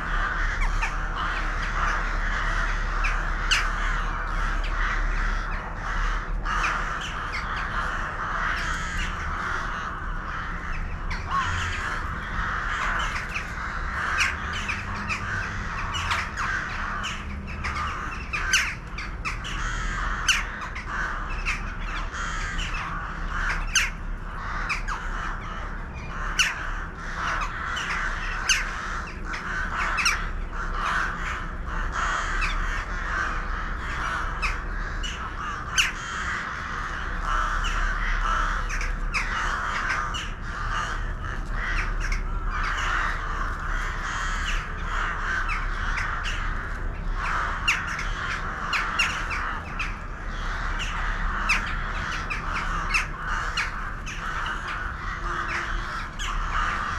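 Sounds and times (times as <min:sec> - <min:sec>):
flock of birds calling: 0:00.0 - 0:56.9.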